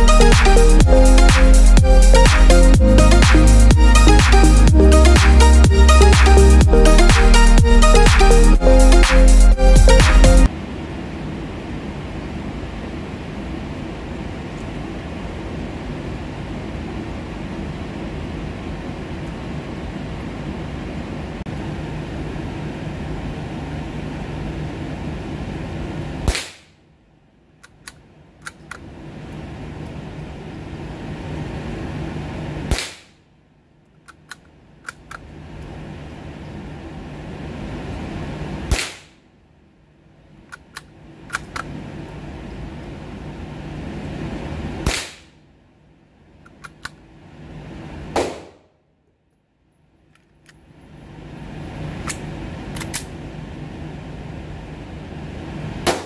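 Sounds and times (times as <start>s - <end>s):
rifle shots cracking: 48.2s - 48.6s.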